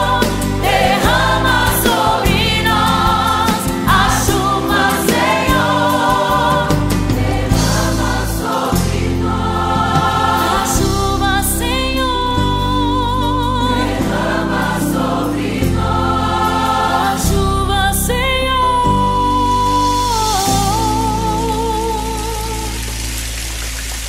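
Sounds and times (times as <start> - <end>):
choir singing: 0.0 - 18.6
instrumental backing: 0.0 - 24.0.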